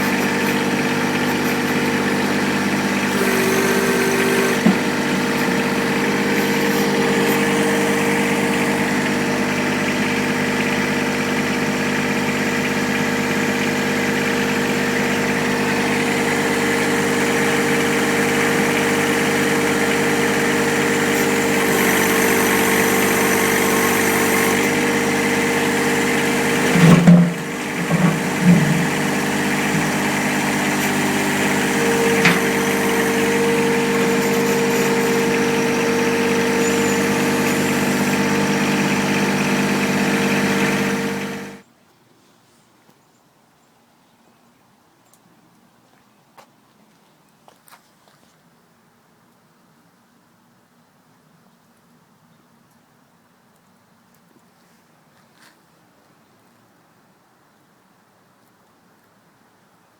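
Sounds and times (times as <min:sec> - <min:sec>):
diesel tractor engine running: 0:00.0 - 0:41.6
loud thumps: 0:00.1 - 0:09.5, 0:15.4 - 0:41.5.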